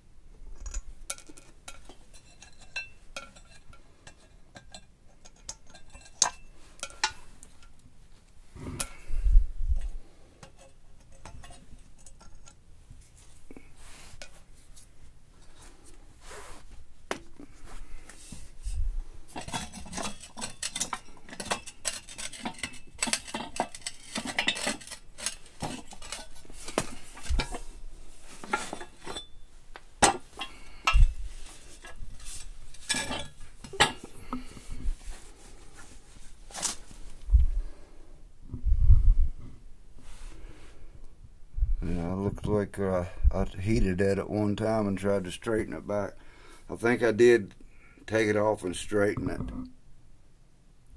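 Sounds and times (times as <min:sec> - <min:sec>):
metal tools clinking: 0:00.6 - 0:07.8, 0:19.3 - 0:34.1.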